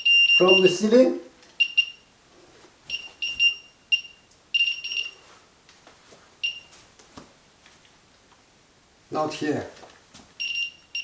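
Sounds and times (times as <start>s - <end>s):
high-pitched detector beeps: 0.0s - 0.8s, 1.6s - 2.1s, 2.9s - 5.2s, 10.4s - 11.0s.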